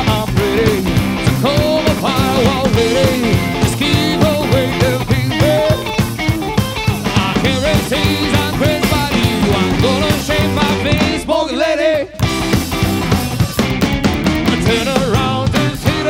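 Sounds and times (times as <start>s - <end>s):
double bass: 0.0s - 11.4s, 12.2s - 16.0s
drums: 0.0s - 16.0s
electric guitar: 0.0s - 16.0s
harmonica: 0.6s - 11.2s.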